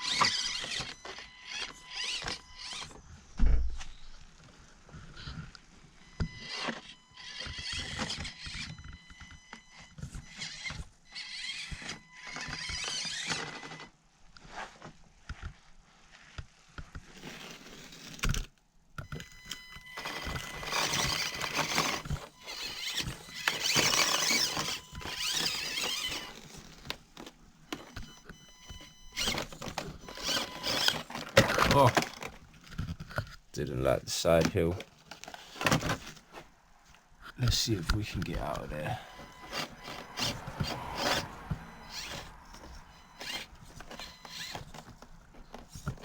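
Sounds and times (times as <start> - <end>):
electric motor whining: 0.0 - 3.1, 6.1 - 13.8, 19.1 - 33.8, 37.6 - 46.0
tyres scrabbling: 20.0 - 46.0.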